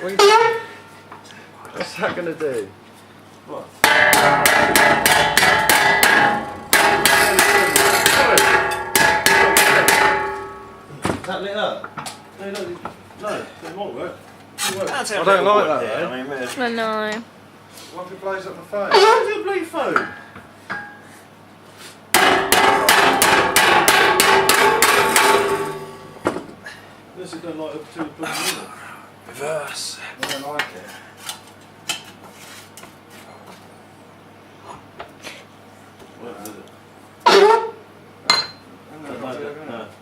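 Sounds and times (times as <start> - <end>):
hammer beating on steel: 3.8 - 10.9, 22.1 - 26.3.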